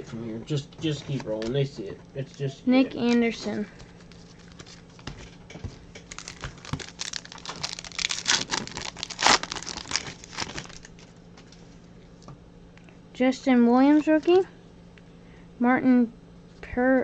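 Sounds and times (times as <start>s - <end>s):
plastic wrapper crinkling and tearing: 3.9s - 5.0s, 6.0s - 11.6s.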